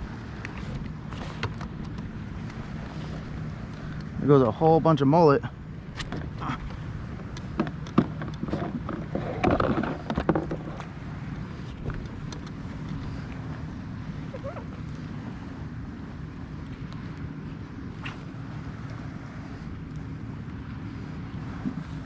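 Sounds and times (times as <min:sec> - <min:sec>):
motorboat engine hum: 0:00.0 - 0:22.0
sharp clicks and knocks: 0:07.3 - 0:10.9, 0:11.8 - 0:13.0.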